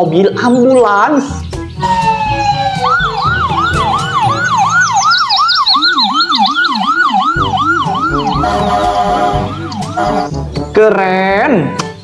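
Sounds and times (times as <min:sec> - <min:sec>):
lower siren: 0:01.8 - 0:10.4
toy siren wailing: 0:01.8 - 0:10.4.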